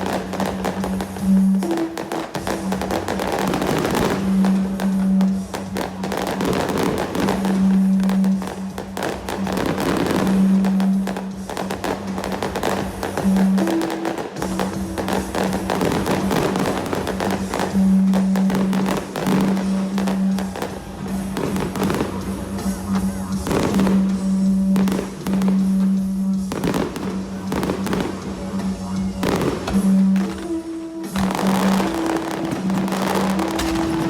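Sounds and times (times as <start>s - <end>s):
fireworks bursting and crackling: 0.0s - 34.0s
loud music: 0.0s - 34.0s.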